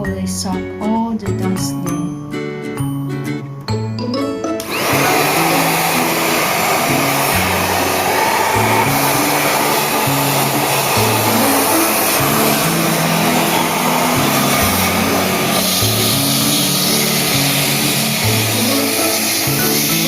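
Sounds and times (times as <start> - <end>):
background music: 0.0 - 20.0
vacuum cleaner running: 4.6 - 20.0.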